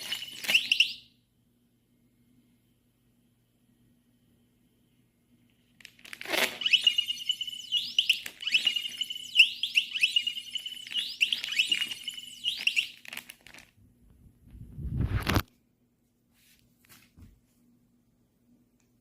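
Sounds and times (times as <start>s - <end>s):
high-pitched alarm tone: 0.0s - 1.1s, 6.6s - 13.0s
warbling alarm chirps: 0.0s - 1.1s, 6.6s - 13.1s.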